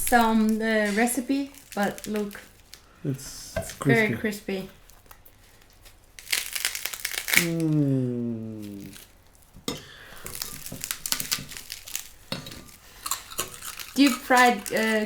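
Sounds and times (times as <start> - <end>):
crispy pork skin crackling: 0.0 - 15.0
person exclaiming: 7.4 - 9.0.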